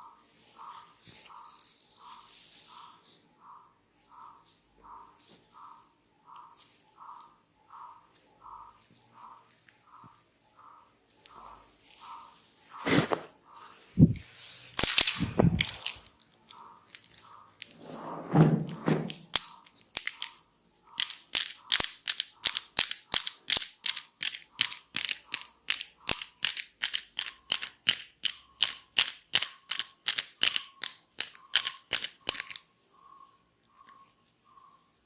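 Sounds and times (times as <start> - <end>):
hands slapping in percussive massage: 21.0 - 32.6.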